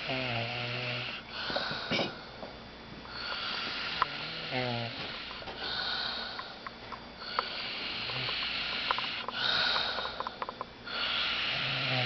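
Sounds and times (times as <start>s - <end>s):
old man breathing noisily: 1.3s - 2.3s, 3.1s - 12.0s
low snore: 3.2s - 6.2s, 10.9s - 12.0s.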